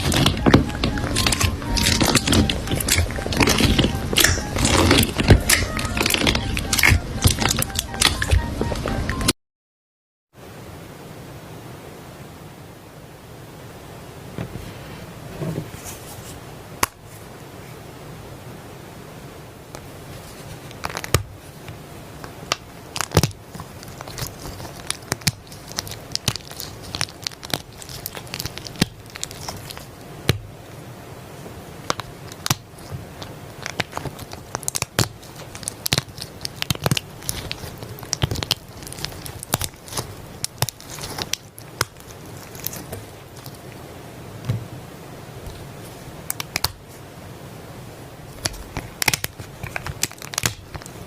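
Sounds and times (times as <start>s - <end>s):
slime squeezed with sticky pops: 0.0s - 8.4s, 22.4s - 30.5s, 31.8s - 43.6s, 46.3s - 46.8s, 48.4s - 51.0s.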